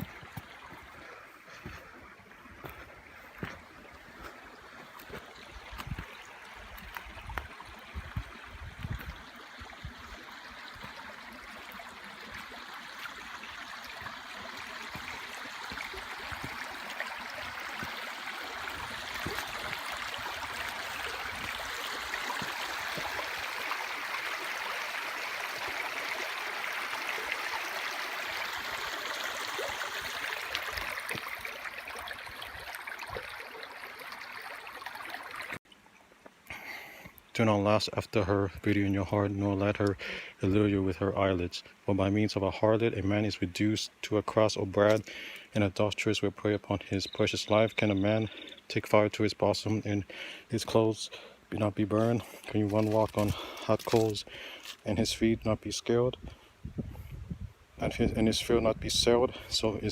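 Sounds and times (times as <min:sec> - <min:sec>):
stream water rushing: 0:00.0 - 0:43.4, 0:44.0 - 0:56.0.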